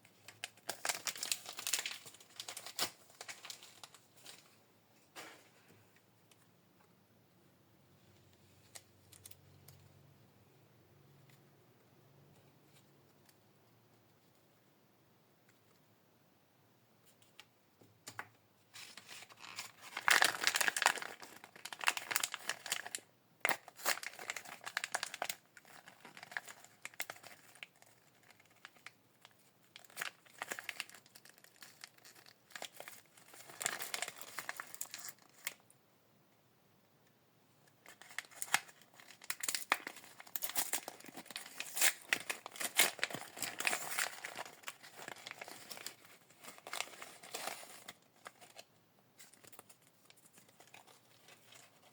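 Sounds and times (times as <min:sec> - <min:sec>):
plastic wrappers crinkling and tearing: 0:00.2 - 0:04.5, 0:18.8 - 0:35.7, 0:37.8 - 0:51.9.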